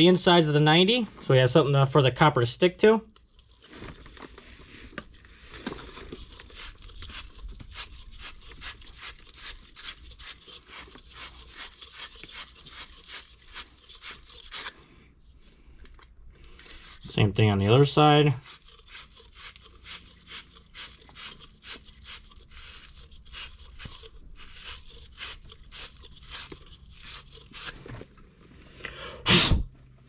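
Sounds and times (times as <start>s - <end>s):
wire brush scrubbing copper pipe: 6.0s - 14.8s, 16.4s - 28.0s.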